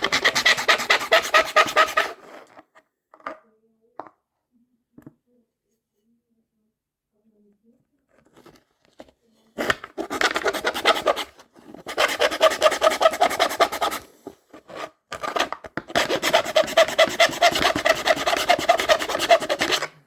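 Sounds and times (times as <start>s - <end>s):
hand file rasping: 0.0s - 2.2s, 9.6s - 20.0s.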